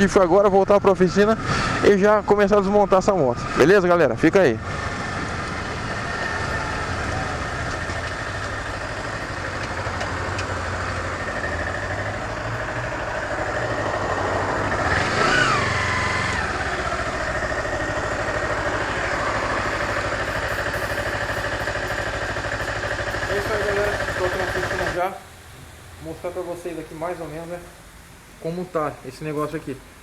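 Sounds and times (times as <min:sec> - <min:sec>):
motorcycle engine running: 0:01.7 - 0:25.1.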